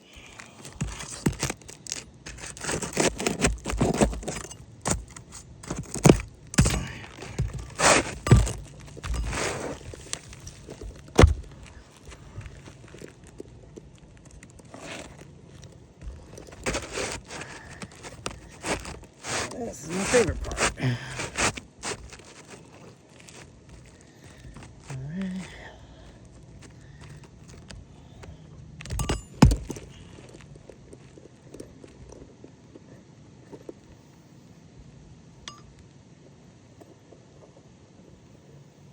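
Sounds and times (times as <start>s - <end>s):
scraping rustle: 0.1s - 28.3s
tools and shingles tapping: 0.6s - 24.7s, 26.6s - 32.2s.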